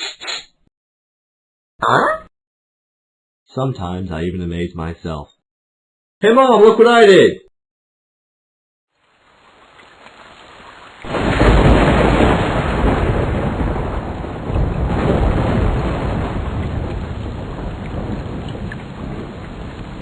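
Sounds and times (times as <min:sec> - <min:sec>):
rain: 0:08.9 - 0:20.0
thunderclap rumbling: 0:11.0 - 0:20.0.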